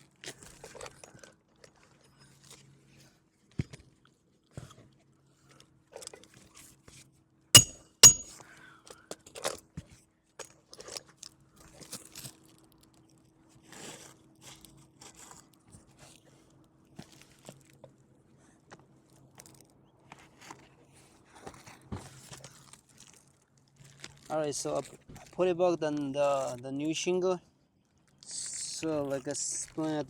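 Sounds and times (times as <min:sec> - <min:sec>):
hammer blows on nails: 0:07.6 - 0:08.3.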